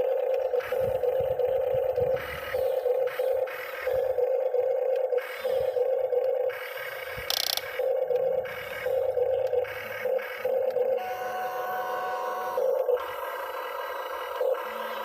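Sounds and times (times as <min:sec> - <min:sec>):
excavator engine and hydraulics: 0:00.0 - 0:15.0.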